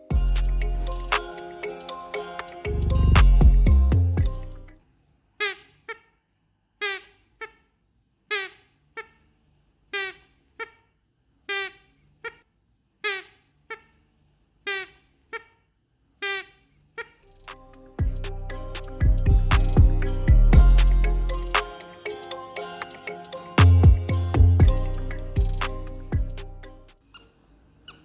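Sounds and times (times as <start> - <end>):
squeaky dog toy squeaking: 11.5 - 14.0, 14.7 - 15.6.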